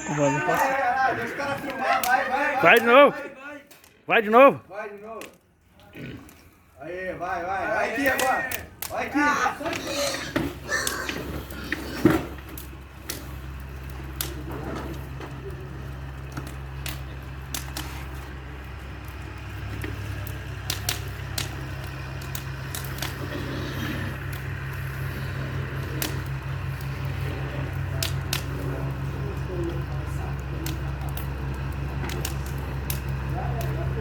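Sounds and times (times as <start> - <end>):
vehicle engine low drone: 0.0 - 34.0
sharp clicks and ticks: 8.0 - 9.0, 16.1 - 23.3, 24.1 - 33.9.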